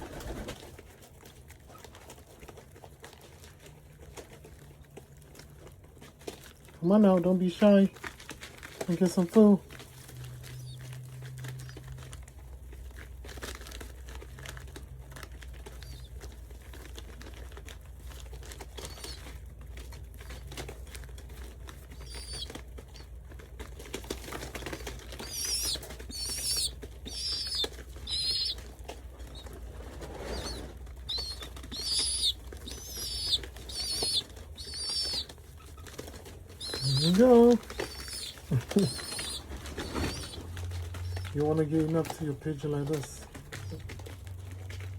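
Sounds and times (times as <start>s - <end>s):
wing flapping: 0.0s - 1.0s, 15.2s - 44.9s
pigeons rustling and clicking: 0.0s - 44.9s
high-pitched wavering squeaks: 25.2s - 28.6s.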